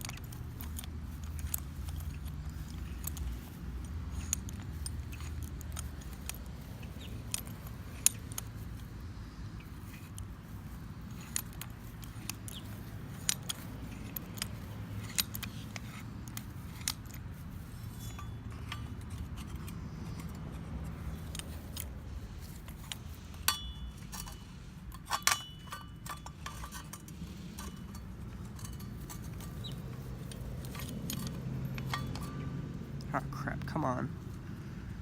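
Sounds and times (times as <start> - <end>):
hand tools clinking on metal: 0.0 - 34.5
ringing metal taps: 17.8 - 21.9, 22.5 - 33.7.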